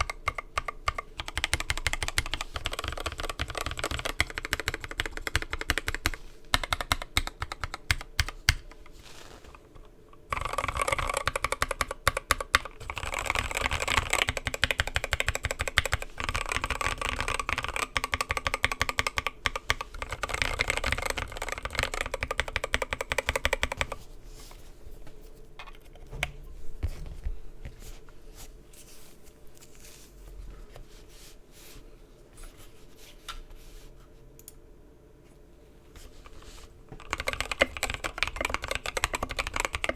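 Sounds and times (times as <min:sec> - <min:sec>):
mechanical keyboard typing: 0:00.0 - 0:08.7, 0:10.3 - 0:24.0, 0:37.0 - 0:39.9.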